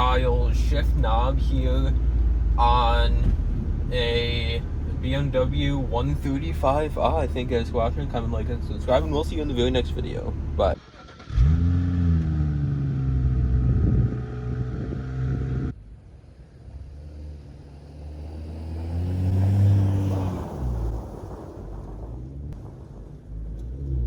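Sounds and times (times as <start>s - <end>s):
car engine accelerating: 0.0s - 24.0s.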